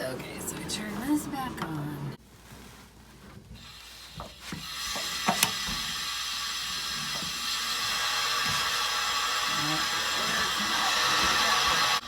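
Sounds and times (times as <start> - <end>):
water hissing through pipe: 3.6 - 12.0
valve handle clicks and knocks: 5.0 - 5.8.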